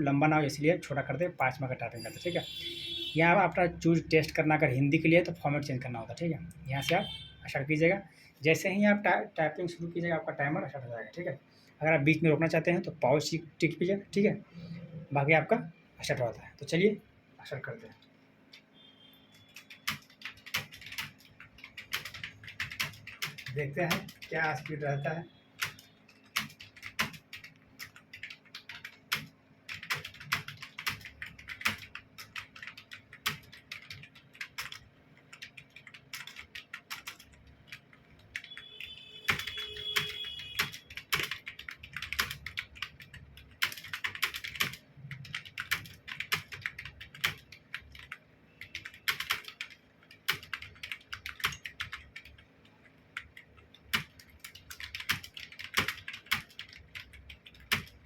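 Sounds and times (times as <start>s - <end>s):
fast keyboard typing: 19.4s - 58.0s.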